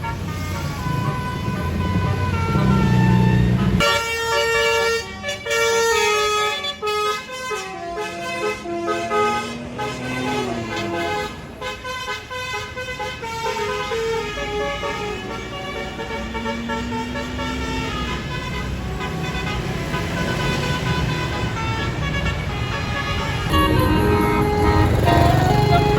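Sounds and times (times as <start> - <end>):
low engine rumble: 0.0 - 4.2, 13.3 - 25.9
multi-note air horn tune: 20.4 - 25.9.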